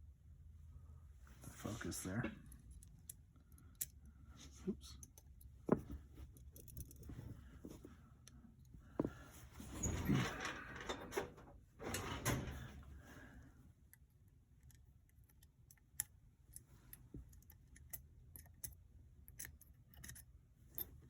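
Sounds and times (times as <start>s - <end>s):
handling rustle: 5.6s - 8.1s
small metal parts clicking and rattling: 6.3s - 7.1s, 14.6s - 21.0s.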